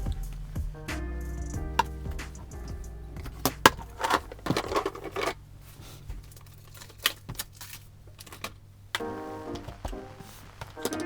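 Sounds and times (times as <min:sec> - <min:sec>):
paper crinkling and tearing: 0:03.4 - 0:11.0.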